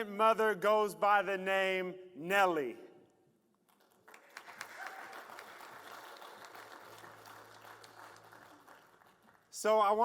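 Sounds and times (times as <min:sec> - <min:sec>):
people applauding: 0:03.7 - 0:10.0.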